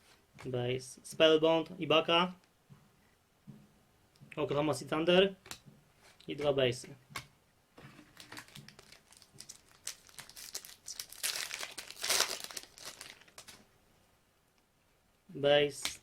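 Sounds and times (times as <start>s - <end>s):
plastic wrapper crinkling and ripping: 8.0s - 13.6s.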